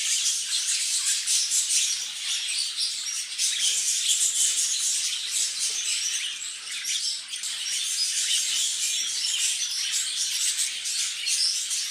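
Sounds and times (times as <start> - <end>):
cage birds chirping: 0.0 - 11.9.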